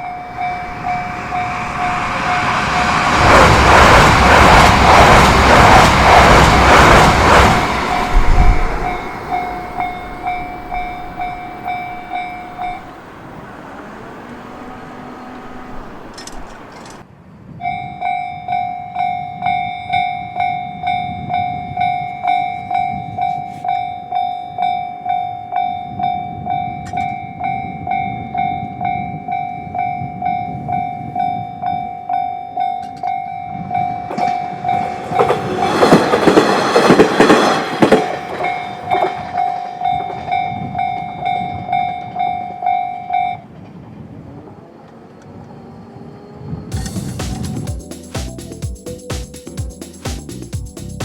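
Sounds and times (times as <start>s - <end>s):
level crossing warning bell: 0.0s - 3.2s, 7.7s - 17.0s, 17.6s - 43.6s
train wheels rumbling on rails: 0.0s - 17.1s, 32.8s - 51.0s.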